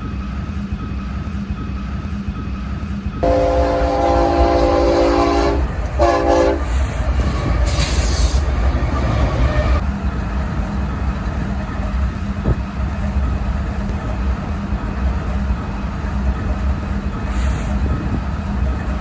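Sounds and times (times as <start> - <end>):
passing train rumble: 0.0 - 19.0
locomotive air horn: 3.2 - 8.5.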